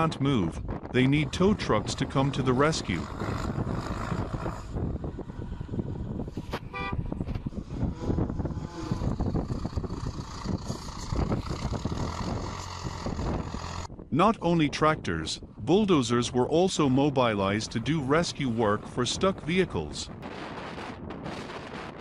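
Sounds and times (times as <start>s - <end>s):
truck horn toot: 6.6s - 7.2s
heavy truck engine running: 7.0s - 14.0s.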